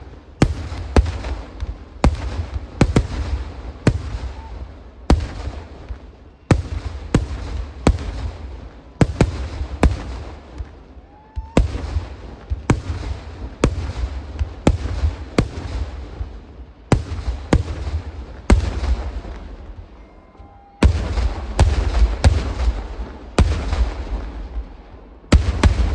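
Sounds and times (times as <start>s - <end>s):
fireworks banging: 0.0s - 20.1s, 20.8s - 25.9s.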